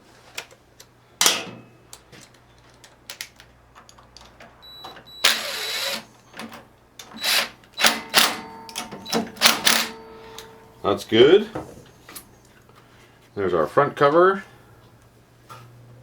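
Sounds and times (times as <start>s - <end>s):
metal tools clicking: 7.2s - 10.6s
sharp metal knocks: 7.8s - 10.7s
metal scraping rattle: 7.9s - 10.6s.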